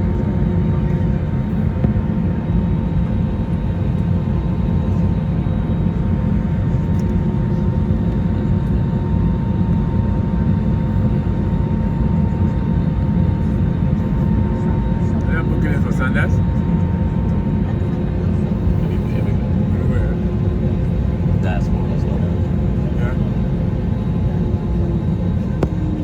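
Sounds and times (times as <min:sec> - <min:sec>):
jet engine cabin rumble: 0:00.0 - 0:26.0.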